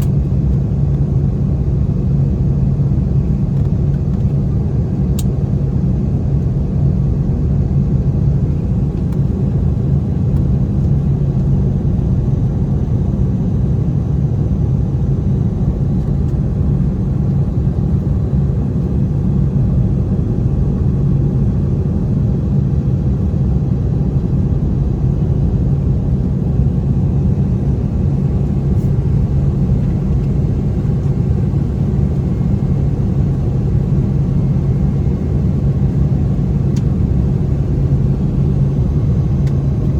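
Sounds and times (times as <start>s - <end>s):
jet engines rumbling: 15.0s - 39.9s.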